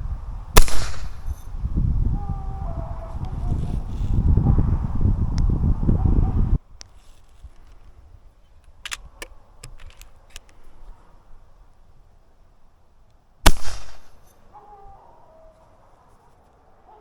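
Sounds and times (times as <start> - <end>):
air rifle shot: 0.6 - 1.4, 13.5 - 14.2.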